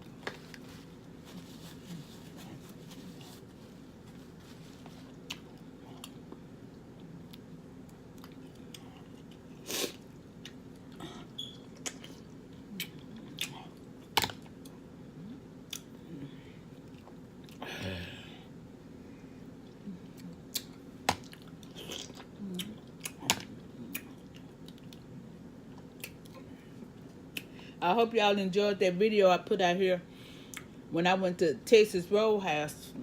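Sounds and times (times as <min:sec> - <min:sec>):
steady low hum: 0:00.0 - 0:33.0
person chewing food: 0:04.8 - 0:17.6, 0:19.5 - 0:27.6.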